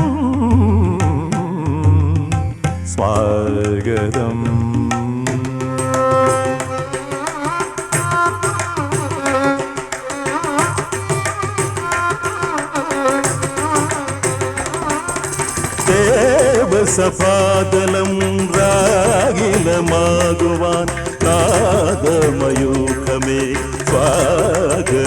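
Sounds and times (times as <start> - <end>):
rapid tabla strokes: 0.0 - 25.0.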